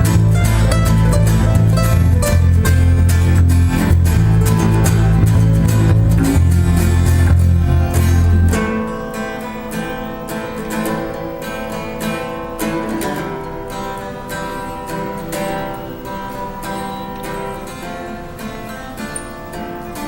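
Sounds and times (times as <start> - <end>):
heavy low bass notes: 0.0 - 8.8
guitars plucked and strummed: 0.0 - 20.0.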